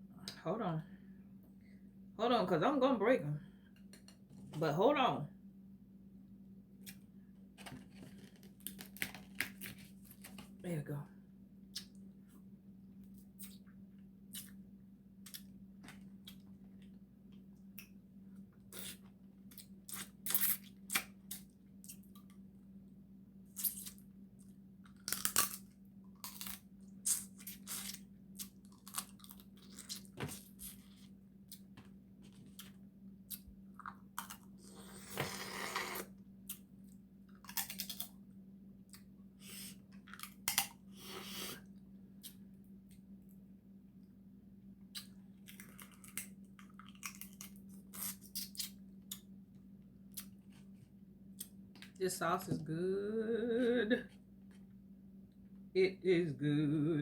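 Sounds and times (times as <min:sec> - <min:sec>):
steady low hum: 0:00.0 - 0:57.0
chewing and tearing meat: 0:24.8 - 0:31.7, 0:36.5 - 0:38.2, 0:44.9 - 0:49.4
crab shell cracking: 0:24.9 - 0:25.6
scraping or slurping: 0:34.7 - 0:36.1.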